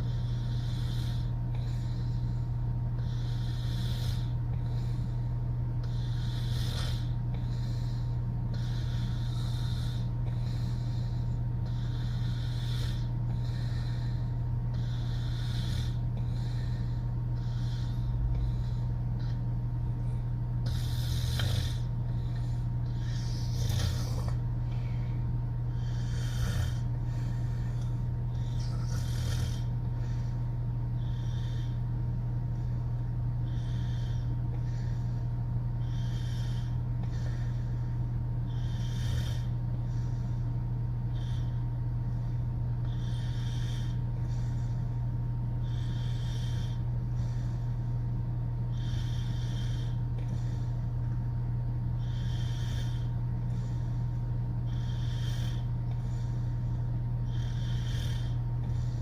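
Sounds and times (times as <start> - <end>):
woman snoring: 0.0 - 2.3, 2.9 - 5.2, 5.8 - 19.0, 20.6 - 22.2, 22.8 - 24.4, 25.7 - 29.8, 38.5 - 39.6, 42.8 - 44.1, 45.6 - 46.9, 52.0 - 53.1, 54.6 - 56.0, 57.2 - 59.0
steady low hum: 0.0 - 59.0.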